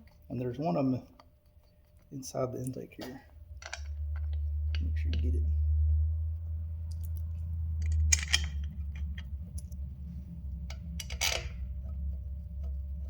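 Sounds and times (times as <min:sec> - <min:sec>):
metal bolts scraping and clicking: 0:00.0 - 0:05.4, 0:06.9 - 0:09.8, 0:10.6 - 0:13.0
steady low hum: 0:00.0 - 0:13.0.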